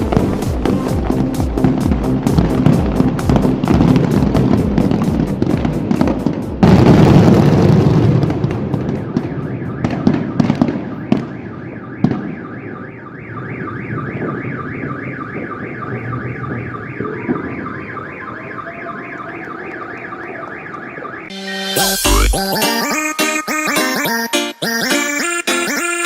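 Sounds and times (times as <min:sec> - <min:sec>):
fireworks banging: 0:00.0 - 0:21.1
car alarm warbling: 0:09.0 - 0:26.0.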